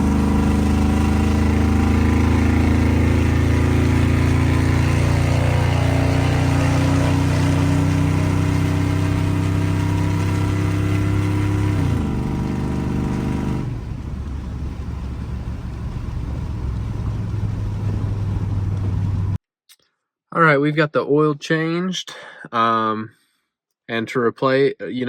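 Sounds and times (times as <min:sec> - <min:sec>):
car engine running: 0:00.0 - 0:19.4.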